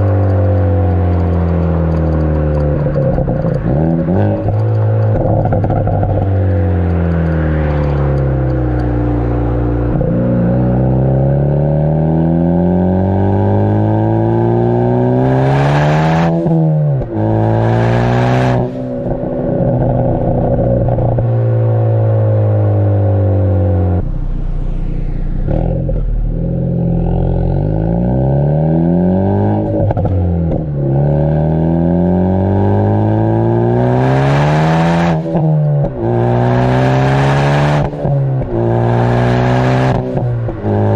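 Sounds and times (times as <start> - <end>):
exhaust pops and crackles: 0.0 - 10.3, 18.6 - 21.4
turbocharged car engine accelerating: 0.0 - 40.9.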